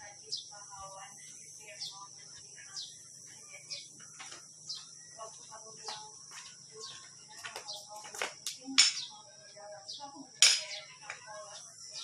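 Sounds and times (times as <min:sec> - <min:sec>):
faint voices murmuring: 0:00.0 - 0:12.0
insect drone: 0:00.0 - 0:12.0
bird chirping: 0:00.2 - 0:08.2.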